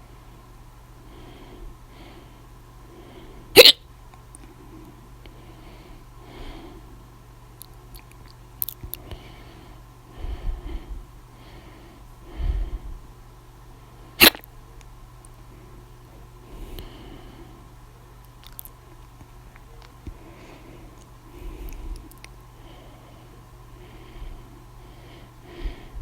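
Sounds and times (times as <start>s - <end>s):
person breathing: 1.0s - 3.5s, 4.5s - 7.1s, 9.0s - 13.1s, 16.4s - 17.8s, 20.1s - 26.0s
person hiccuping: 3.6s - 3.8s, 14.2s - 14.4s.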